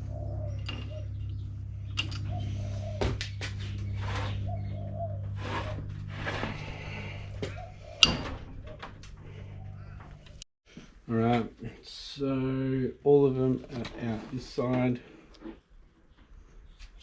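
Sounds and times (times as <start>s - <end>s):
scraping rattles: 0.0s - 10.4s
steady low hum: 0.0s - 15.4s.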